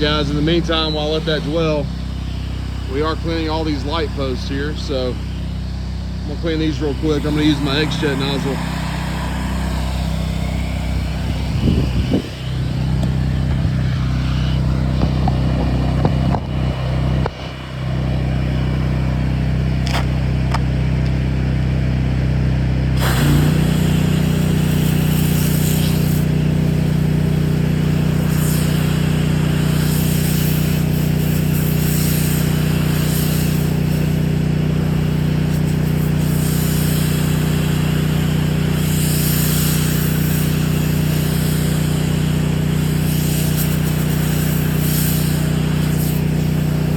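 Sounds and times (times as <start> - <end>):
pressure washer engine running: 0.0 - 46.9
hiss of high-pressure spray: 6.6 - 12.6, 23.0 - 46.9.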